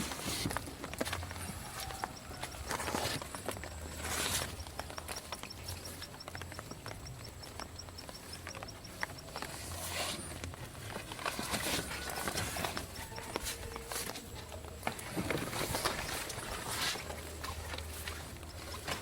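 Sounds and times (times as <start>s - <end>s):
high fast ticking: 0.0s - 14.8s.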